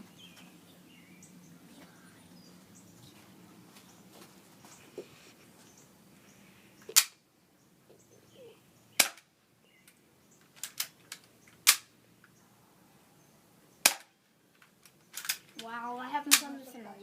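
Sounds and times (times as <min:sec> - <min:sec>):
airsoft gun shots: 0:09.0 - 0:09.3, 0:13.8 - 0:14.2.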